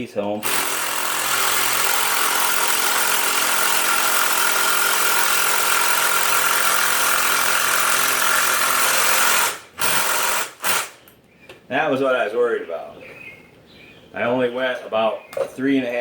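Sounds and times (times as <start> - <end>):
power drill driving screw into wood: 0.4 - 11.0.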